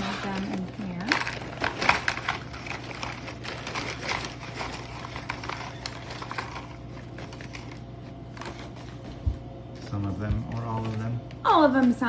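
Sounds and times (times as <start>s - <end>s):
crackers clattering into plastic box: 0.0s - 7.7s.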